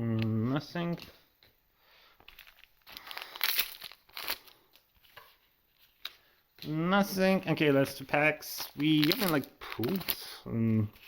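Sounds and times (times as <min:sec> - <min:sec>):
foil wrapper tearing and crinkling: 0:02.4 - 0:04.8, 0:08.6 - 0:10.4.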